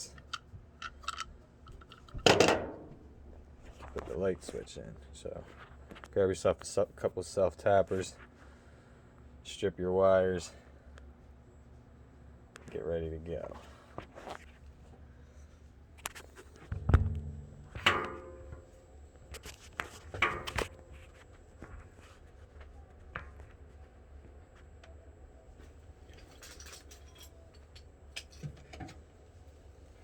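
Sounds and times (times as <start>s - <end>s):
metal tools handled and set down: 0.3s - 3.0s, 26.1s - 27.6s
low thump: 16.7s - 18.0s.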